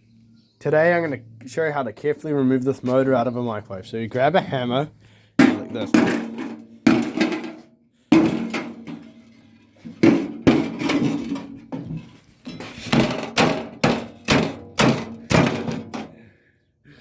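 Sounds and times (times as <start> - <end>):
hammer striking metal casing: 5.4 - 9.1, 12.9 - 16.1.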